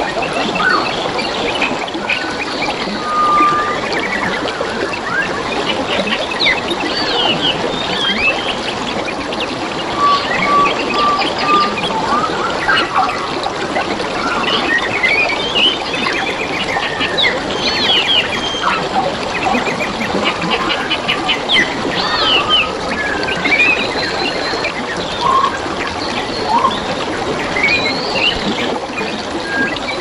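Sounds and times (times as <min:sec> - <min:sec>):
water trickling and babbling: 0:00.0 - 0:30.0
birds chirping and whistling: 0:02.9 - 0:04.4, 0:10.0 - 0:13.3, 0:14.2 - 0:26.9.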